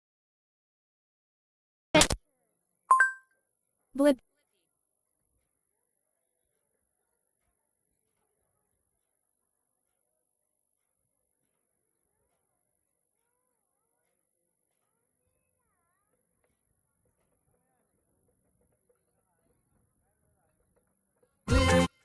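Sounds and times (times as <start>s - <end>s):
high-pitched electronic tone: 2.9s - 3.2s, 21.5s - 22.0s.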